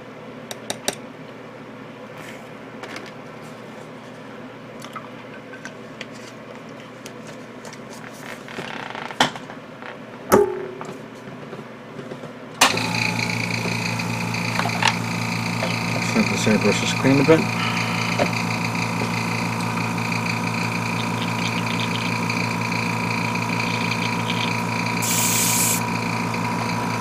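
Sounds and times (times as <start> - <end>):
airbrush compressor running: 12.6 - 27.0.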